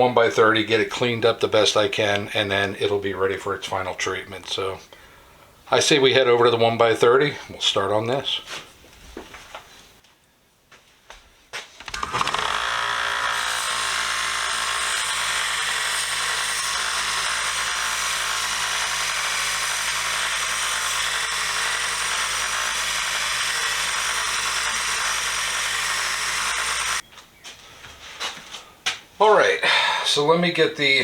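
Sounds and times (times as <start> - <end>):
belt sander running: 11.9 - 27.0
metal bar grinding on belt: 11.9 - 27.0.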